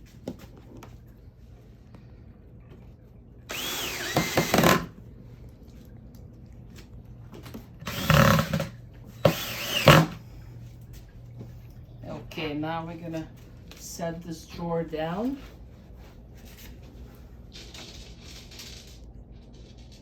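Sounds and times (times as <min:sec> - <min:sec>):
power drill driving screws into wood: 0:03.5 - 0:04.9, 0:07.8 - 0:10.2.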